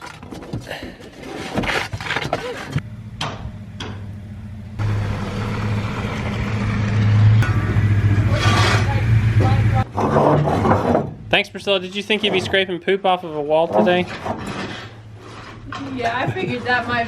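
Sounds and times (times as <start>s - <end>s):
engine humming: 2.2s - 10.1s.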